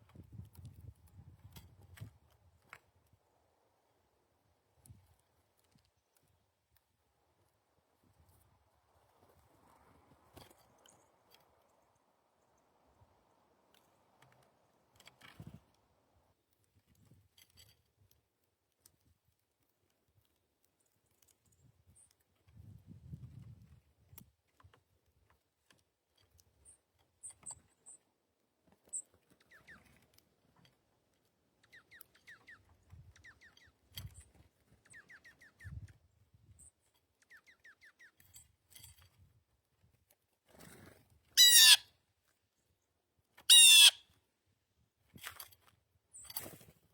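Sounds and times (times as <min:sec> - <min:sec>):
small birds chipping: 0:10.4 - 0:15.6, 0:28.8 - 0:38.7
loud harsh bird calls: 0:41.4 - 0:41.8, 0:43.5 - 0:44.0.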